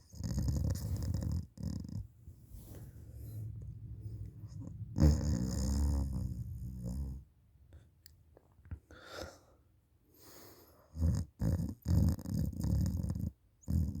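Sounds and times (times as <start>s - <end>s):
soft breath: 2.2s - 5.6s, 8.9s - 10.9s.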